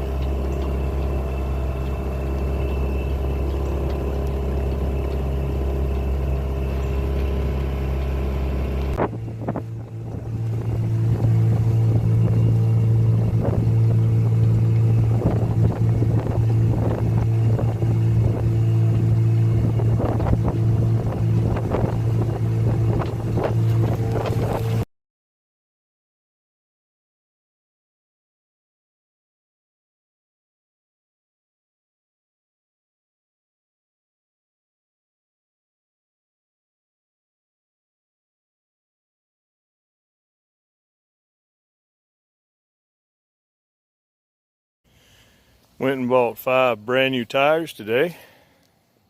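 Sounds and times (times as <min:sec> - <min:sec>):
engine running: 0:00.0 - 0:24.9.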